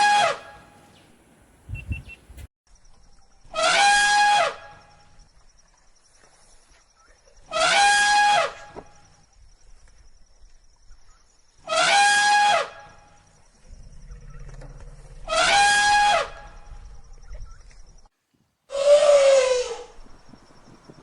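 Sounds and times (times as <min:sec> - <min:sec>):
elephant trumpeting: 0:15.3 - 0:16.4.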